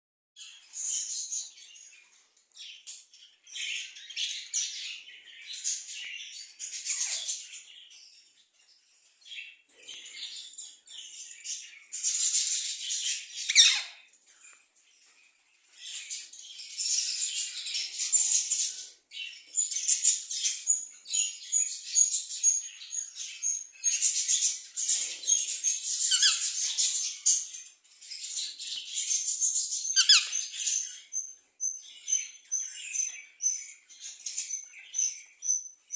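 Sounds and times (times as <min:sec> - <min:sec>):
budgerigars chattering and warbling: 0:09.9 - 0:14.0, 0:15.8 - 0:35.7.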